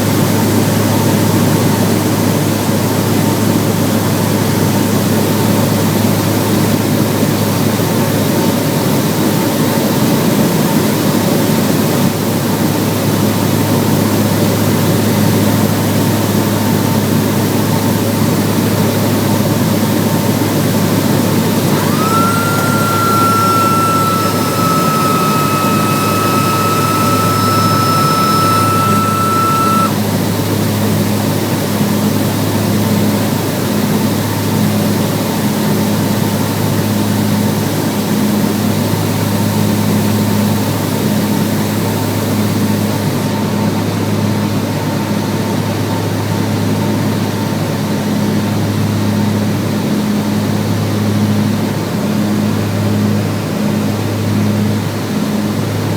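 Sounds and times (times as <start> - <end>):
aircraft piston engines droning: 20.3 - 30.7.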